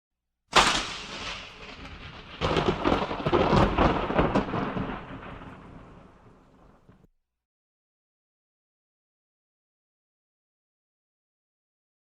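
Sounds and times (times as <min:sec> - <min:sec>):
crackling firework pops: 0:00.5 - 0:07.0
firework bang: 0:00.5 - 0:07.0.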